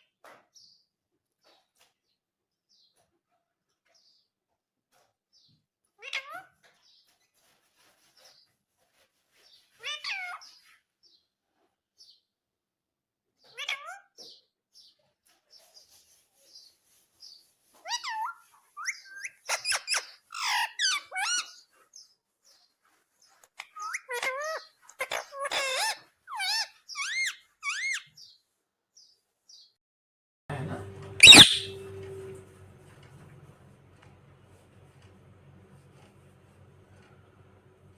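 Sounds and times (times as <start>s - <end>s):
parrot calling and chattering: 9.8s - 10.6s, 13.5s - 14.2s, 17.8s - 21.7s, 23.6s - 28.2s, 31.2s - 31.8s.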